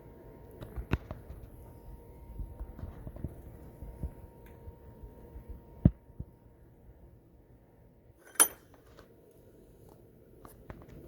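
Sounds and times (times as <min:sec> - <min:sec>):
sharp ringing click: 0:08.2 - 0:08.7.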